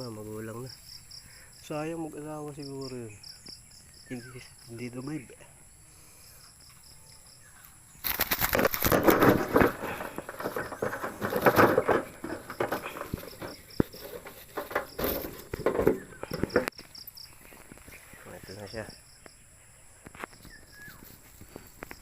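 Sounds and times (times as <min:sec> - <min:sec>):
faint crickets chirping: 0:00.0 - 0:22.0
dove wings flapping: 0:08.0 - 0:16.6.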